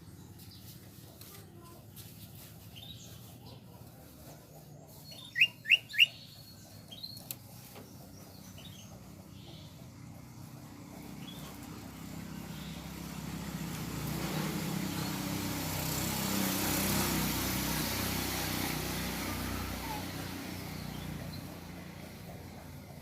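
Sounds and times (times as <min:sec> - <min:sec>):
vehicle passing by: 0:00.0 - 0:23.0.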